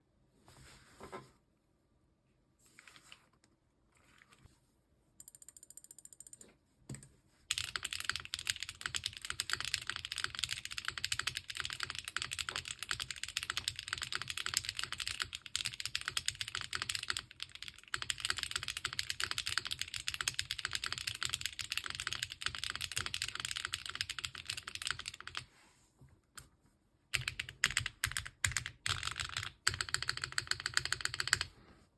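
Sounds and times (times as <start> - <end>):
mechanical keyboard typing: 5.2 - 25.5, 27.1 - 31.5.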